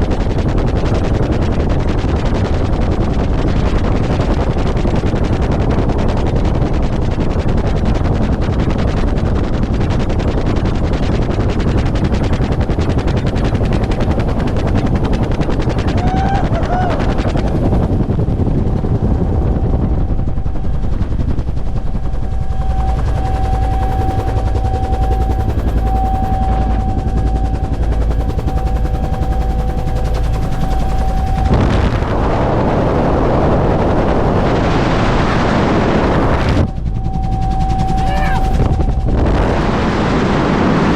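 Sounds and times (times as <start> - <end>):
helicopter rotor beating: 0.0 - 40.9
turbine whine: 0.0 - 40.9.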